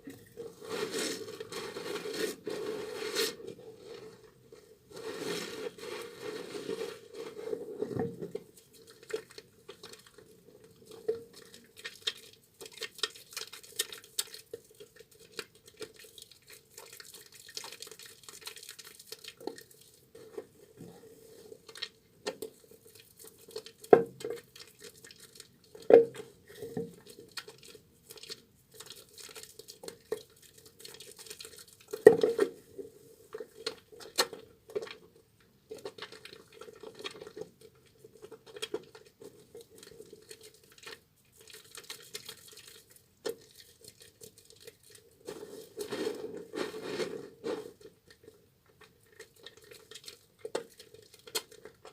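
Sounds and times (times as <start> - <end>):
soap squelching in wet hands: 8.4 - 20.1, 21.6 - 32.0, 35.7 - 45.9, 48.8 - 51.9.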